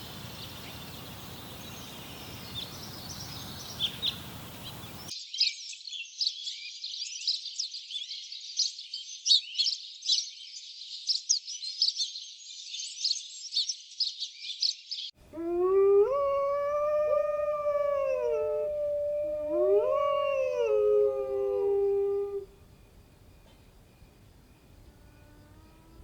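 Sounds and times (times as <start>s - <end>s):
dog howling: 15.3s - 22.6s
high-pitched chirping chorus: 15.4s - 22.6s.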